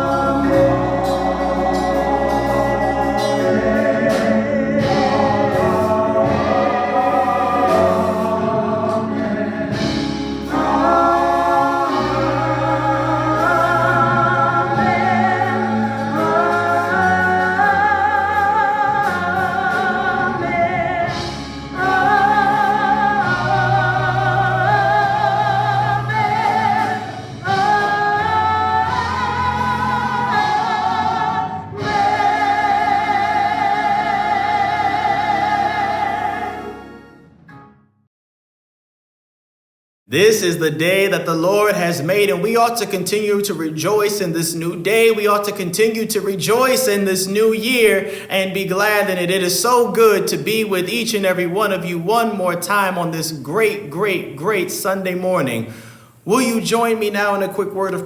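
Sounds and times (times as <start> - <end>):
gospel choir singing: 0.0 - 37.4, 40.1 - 58.0
instrumental accompaniment with bass: 0.0 - 38.0.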